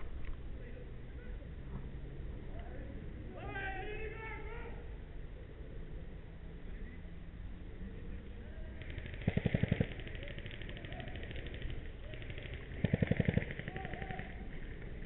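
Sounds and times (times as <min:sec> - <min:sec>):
airsoft guns firing bursts: 0:08.7 - 0:15.0
distant rapid gunfire rattling: 0:08.7 - 0:15.0.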